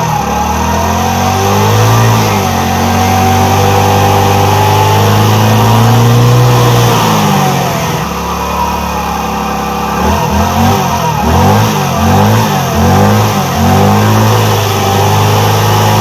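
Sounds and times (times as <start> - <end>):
motor scooter engine revving: 0.0 - 16.0.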